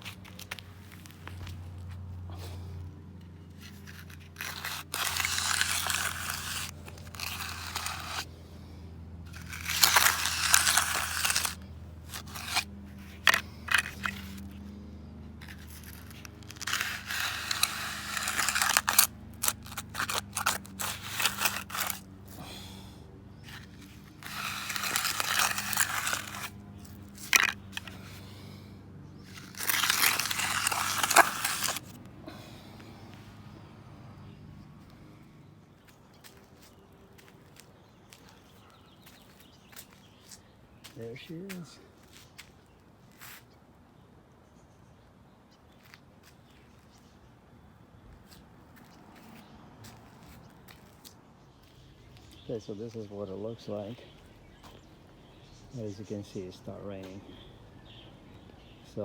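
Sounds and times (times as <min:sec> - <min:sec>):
hand tool scraping concrete: 0:03.6 - 0:08.3, 0:09.3 - 0:14.5, 0:15.4 - 0:22.7, 0:23.4 - 0:28.5, 0:29.3 - 0:32.0.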